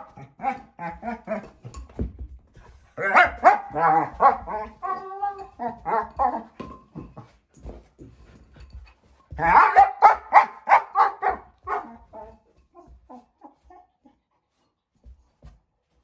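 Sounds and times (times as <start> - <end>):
puppy barking: 3.0 - 5.0, 9.4 - 12.3.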